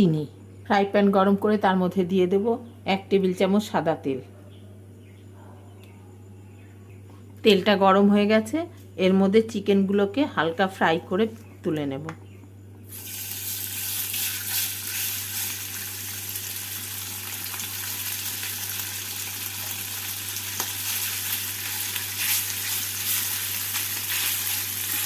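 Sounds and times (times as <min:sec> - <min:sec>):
chicken sizzling in hot oil: 0:12.9 - 0:25.0.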